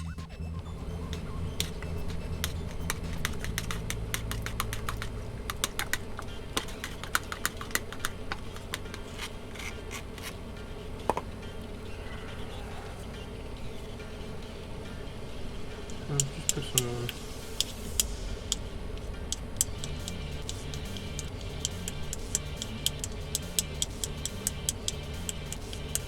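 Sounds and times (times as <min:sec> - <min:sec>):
scratching of scrubbing: 0:02.4 - 0:10.4.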